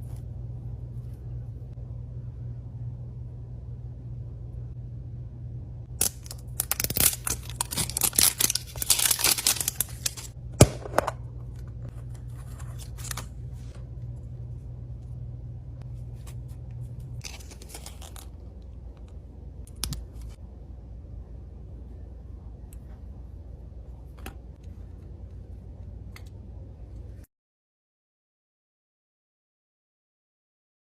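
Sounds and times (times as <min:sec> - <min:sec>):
steady low hum: 0:00.0 - 0:27.3
packaging crinkling: 0:06.0 - 0:10.4, 0:17.2 - 0:18.4.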